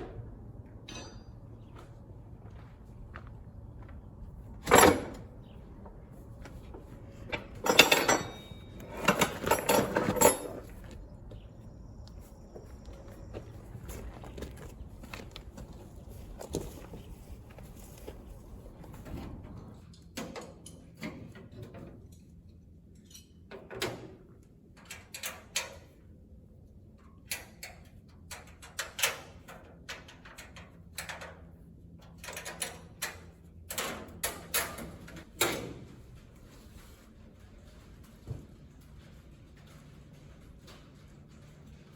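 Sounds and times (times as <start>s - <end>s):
knocks and clanks of tools: 0.8s - 1.4s, 4.6s - 5.3s, 7.3s - 11.0s.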